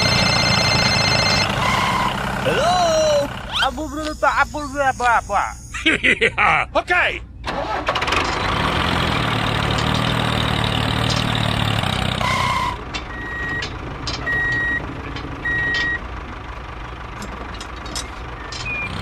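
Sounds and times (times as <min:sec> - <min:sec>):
reversing alarm beeping: 0:00.0 - 0:05.9, 0:12.2 - 0:16.0
truck engine running: 0:00.0 - 0:06.2, 0:07.2 - 0:19.0.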